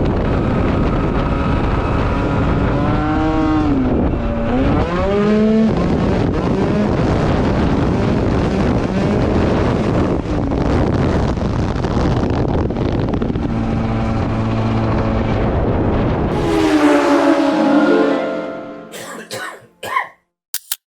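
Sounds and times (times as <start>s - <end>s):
wind noise on microphone: 0.0s - 16.5s.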